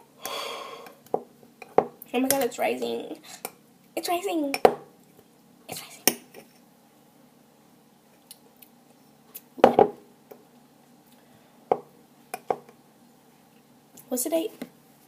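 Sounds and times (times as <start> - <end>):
faint steady hum: 0.0 - 15.0
dishes clinking and knocking: 9.6 - 10.0.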